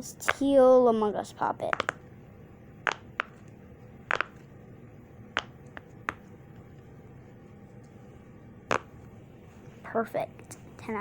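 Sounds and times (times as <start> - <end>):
fidget toy bubbles popping: 1.6 - 2.0, 2.8 - 3.4, 4.1 - 4.4.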